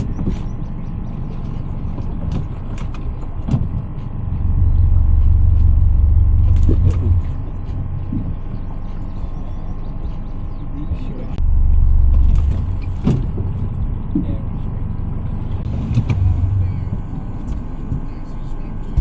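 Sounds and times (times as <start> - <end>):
boat motor rumbling: 0.0 - 19.0
sharp clicks and knocks: 1.3 - 4.6, 5.2 - 8.6.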